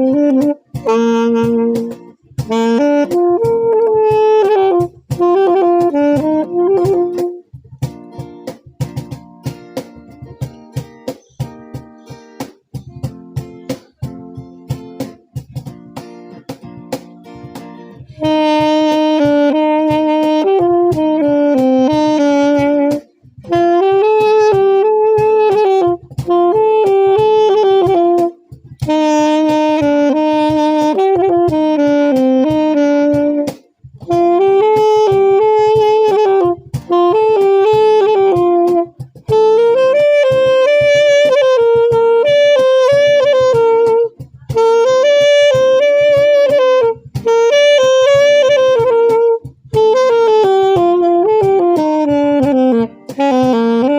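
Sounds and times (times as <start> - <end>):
saxophone slow melody: 0.0 - 53.9
strummed guitar: 0.0 - 53.9.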